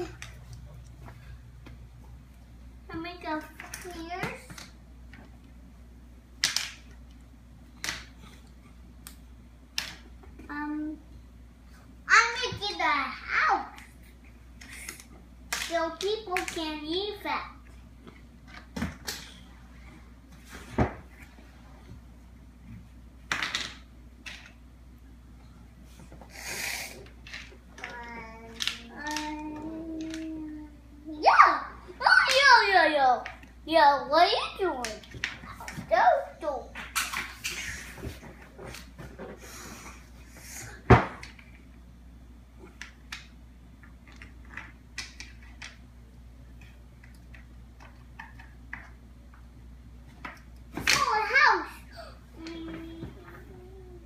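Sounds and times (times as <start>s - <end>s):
steady low hum: 0.0s - 54.0s.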